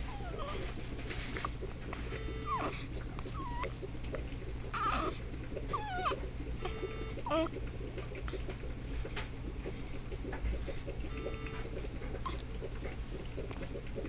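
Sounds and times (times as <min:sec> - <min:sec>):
baby squealing and cooing: 0:04.8 - 0:05.2.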